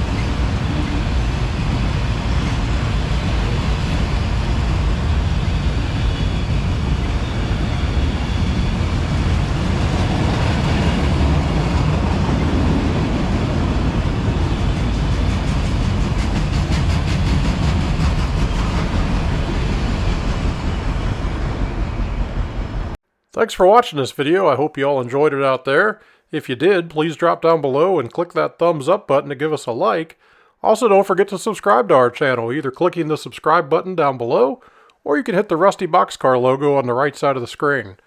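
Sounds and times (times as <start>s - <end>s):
train wheels rumbling on rail: 0.0s - 23.0s.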